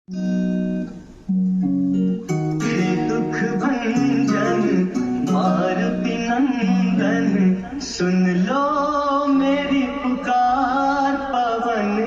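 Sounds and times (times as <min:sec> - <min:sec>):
plucked guitar chords: 0:00.1 - 0:08.5
fuller instrumental arrangement: 0:00.1 - 0:11.0.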